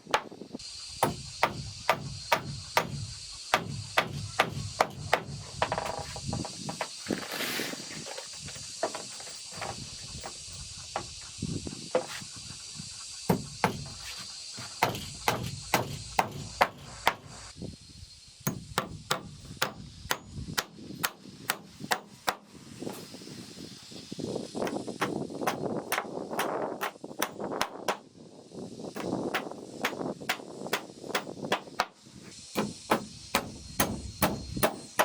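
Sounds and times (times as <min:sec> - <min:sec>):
hand tool striking wood: 0:00.0 - 0:00.4, 0:01.0 - 0:07.0, 0:08.5 - 0:10.4, 0:13.3 - 0:17.4, 0:18.5 - 0:22.5, 0:24.6 - 0:28.0, 0:29.0 - 0:35.0.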